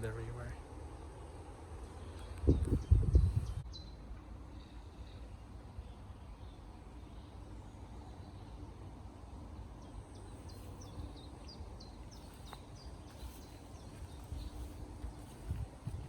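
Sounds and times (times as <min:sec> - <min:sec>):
low outdoor rumble: 0:00.0 - 0:16.0
small bird chirping: 0:09.8 - 0:16.0.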